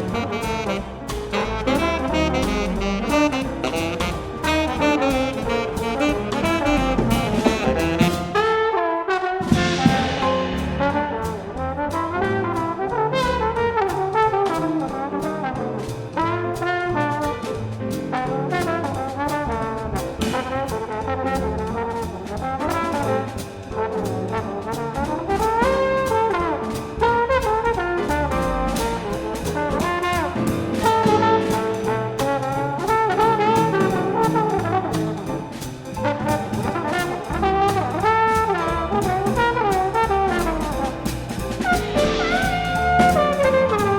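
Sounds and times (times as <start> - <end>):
drum kit beat: 0.0 - 8.7, 9.4 - 43.9
saxophone: 0.0 - 9.8
bass: 0.0 - 43.9
piano: 0.0 - 43.9
trombone: 0.0 - 43.9.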